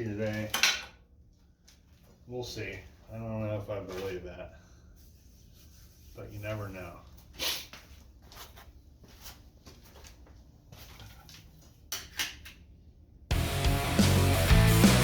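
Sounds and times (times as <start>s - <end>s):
loud music: 13.3s - 15.0s.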